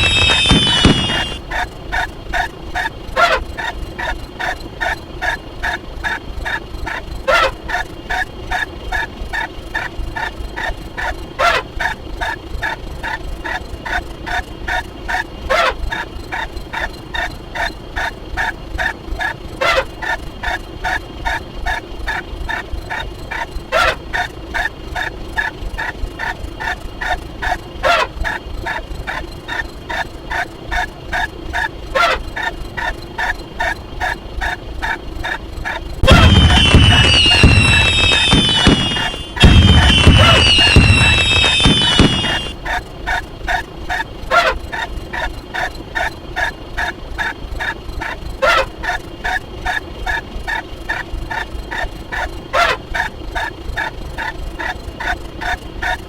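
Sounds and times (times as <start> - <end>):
gobble-like animal calls: 0.0 - 1.6, 16.8 - 21.4, 22.9 - 25.1, 27.8 - 29.2, 29.9 - 32.2, 36.0 - 50.2, 50.9 - 53.5.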